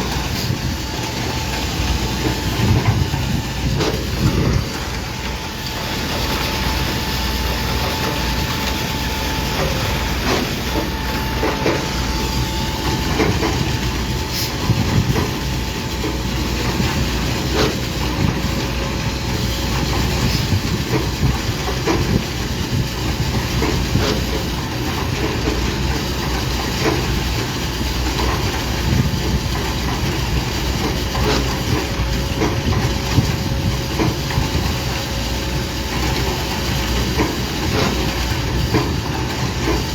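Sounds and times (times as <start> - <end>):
heavy construction machinery running: 0.0 - 39.9
hiss: 14.2 - 15.6.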